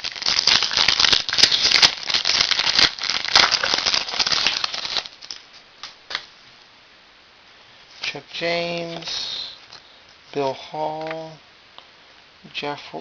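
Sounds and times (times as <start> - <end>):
foil wrapper tearing and crinkling: 0.0 - 5.4.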